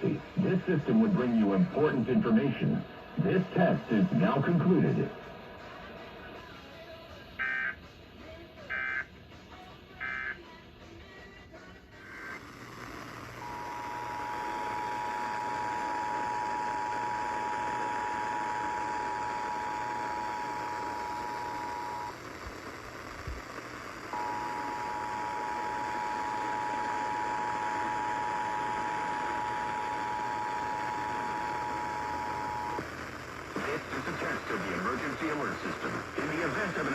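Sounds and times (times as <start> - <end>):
radio static hiss: 0.0 - 7.7, 12.0 - 36.9
two-tone alarm: 13.4 - 22.1, 24.1 - 32.8.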